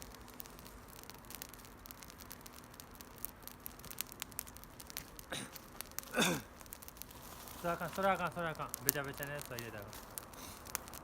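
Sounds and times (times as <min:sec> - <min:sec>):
campfire crackling: 0:00.0 - 0:11.0.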